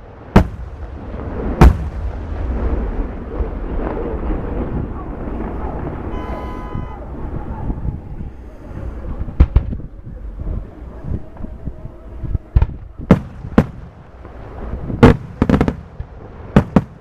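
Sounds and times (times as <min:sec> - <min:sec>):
low rumble: 0:00.0 - 0:15.4
whistle-like tone: 0:06.0 - 0:08.0.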